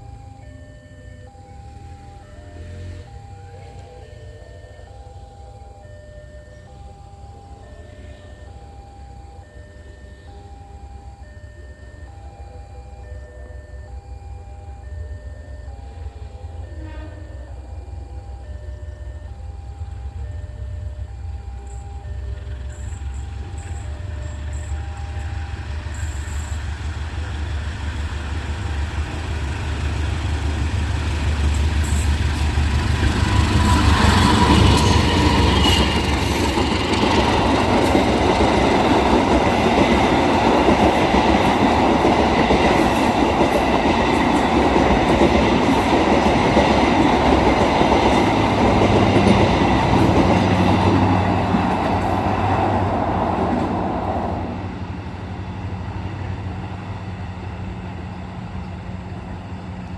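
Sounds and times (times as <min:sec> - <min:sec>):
diesel locomotive engine rumble: 0:00.0 - 0:59.9
train wheels on rails: 0:17.8 - 0:59.9.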